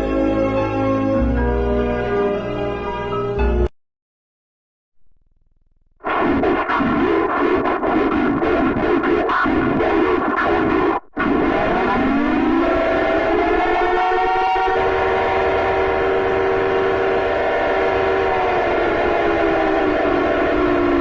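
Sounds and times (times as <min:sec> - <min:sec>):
siren-like alarm tones: 0:11.2 - 0:21.0.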